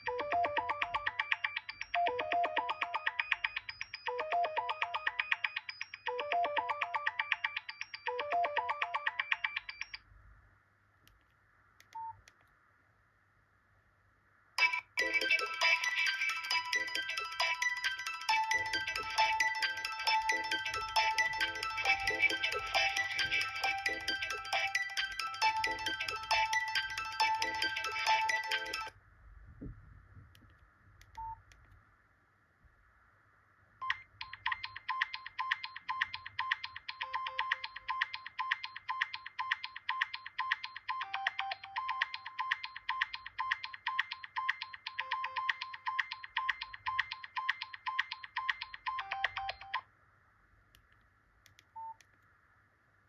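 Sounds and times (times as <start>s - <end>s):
electronic ringtone melody: 0.0s - 9.9s, 14.6s - 28.9s, 34.2s - 49.8s
fast repeated electronic beeps: 14.6s - 28.9s, 33.8s - 49.8s.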